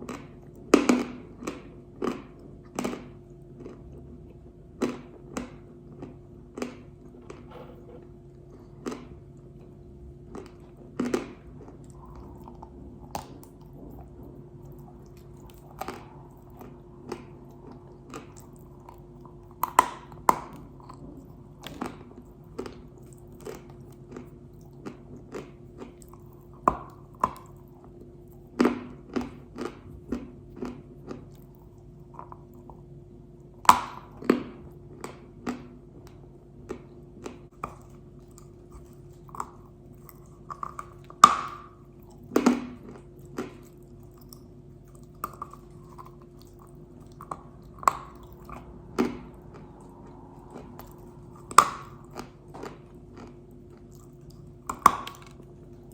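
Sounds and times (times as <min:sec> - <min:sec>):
faint steady hum: 0:00.0 - 0:55.9
biting and crunching clay: 0:14.8 - 0:21.0, 0:33.6 - 0:35.6.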